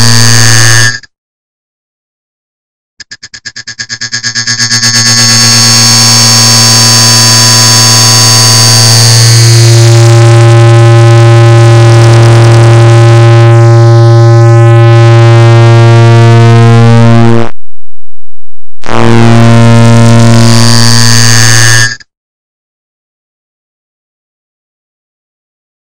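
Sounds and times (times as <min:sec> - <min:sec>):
rapid clock ticks buzzing tone: 0:03.0 - 0:10.5.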